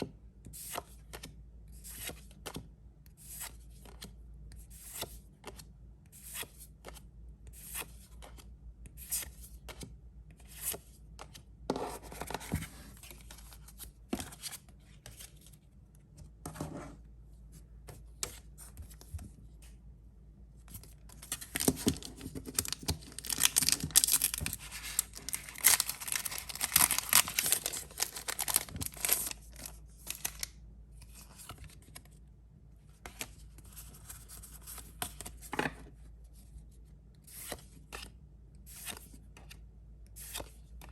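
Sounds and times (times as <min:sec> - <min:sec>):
cards clicking and rustling: 0:21.2 - 0:30.5
card packaging tearing and crinkling: 0:21.4 - 0:30.5.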